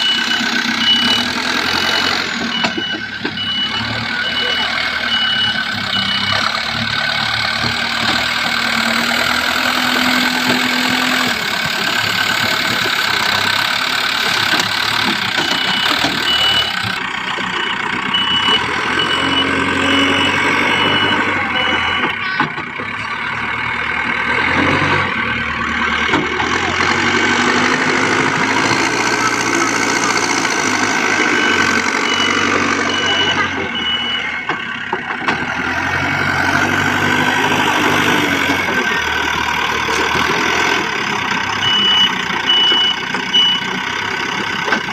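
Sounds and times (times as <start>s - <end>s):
reversing alarm beeping: 0.0s - 22.4s, 26.9s - 34.6s, 41.6s - 43.8s
diesel engines running: 0.0s - 44.9s.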